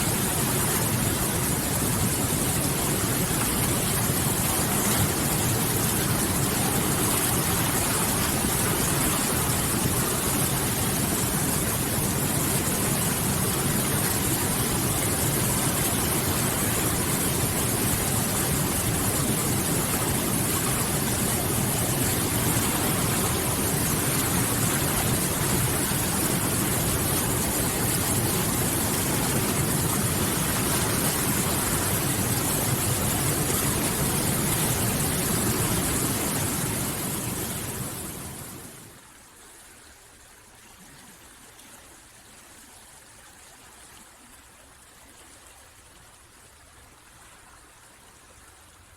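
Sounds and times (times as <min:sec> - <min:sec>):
river water rushing: 0:00.0 - 0:39.0.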